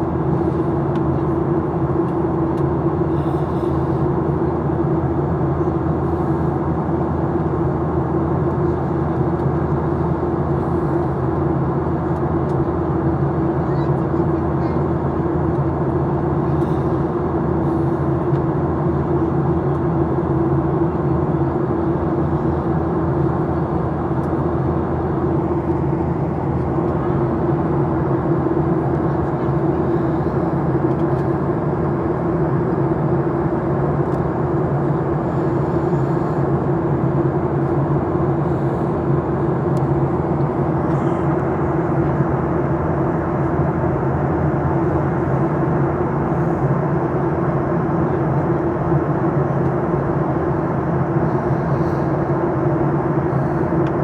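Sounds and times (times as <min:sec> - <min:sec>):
jet engine drone: 0:00.0 - 0:54.0
steady hum: 0:14.4 - 0:54.0.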